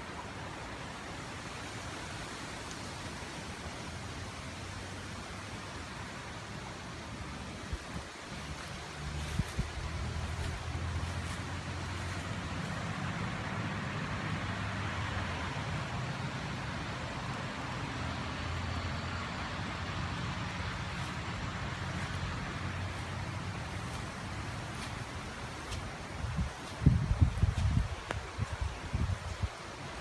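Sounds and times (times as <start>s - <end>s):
wind buffeting microphone: 7.6s - 12.9s, 20.5s - 29.7s
wind gusts rushing: 20.5s - 30.0s.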